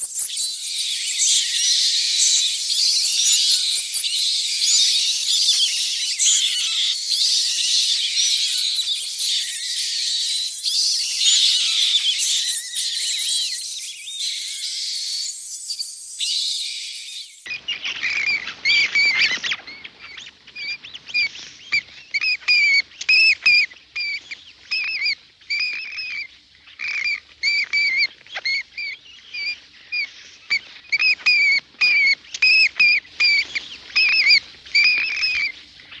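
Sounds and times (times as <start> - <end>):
animal chirping calls: 0.0 - 17.5.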